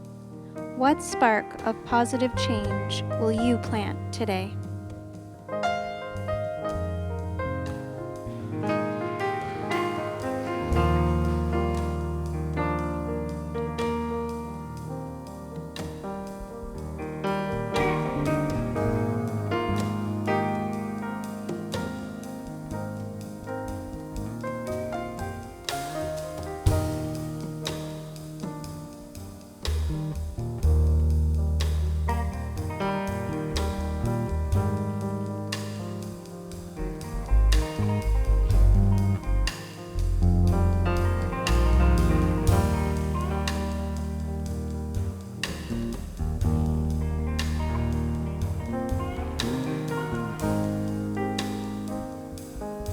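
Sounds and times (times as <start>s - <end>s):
gentle piano music: 0.0s - 52.9s
light percussion: 0.0s - 52.9s
bass line: 0.8s - 5.2s, 6.0s - 25.2s, 29.7s - 36.0s, 36.7s - 52.9s
plucked strings: 16.6s - 22.0s, 36.8s - 52.0s
plucked guitar chords: 17.5s - 20.7s.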